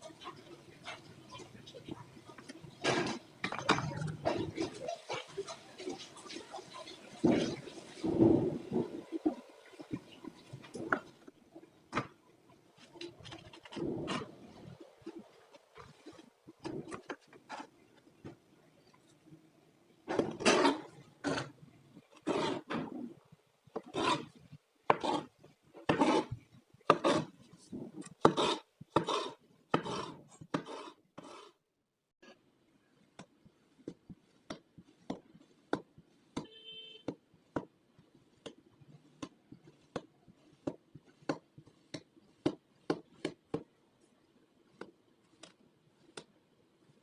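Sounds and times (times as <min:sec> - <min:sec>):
tool scraping sand: 0:20.1 - 0:21.5, 0:22.2 - 0:22.9, 0:23.8 - 0:27.4, 0:28.2 - 0:31.6.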